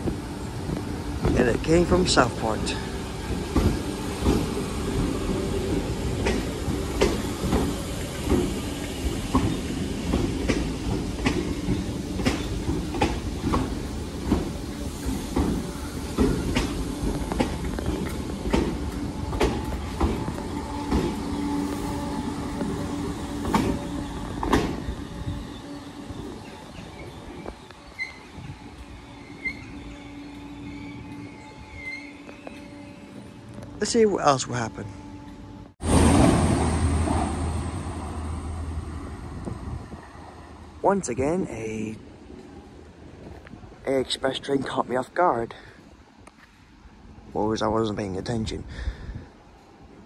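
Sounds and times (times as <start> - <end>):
train running noise: 0.0 - 50.0
wheels clicking over rail joints: 3.3 - 21.3.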